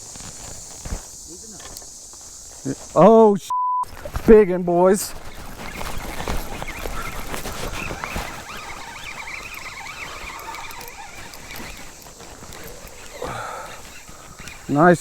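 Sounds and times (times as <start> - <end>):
water movement: 3.8 - 15.0
fishing reel clicking: 5.0 - 15.0.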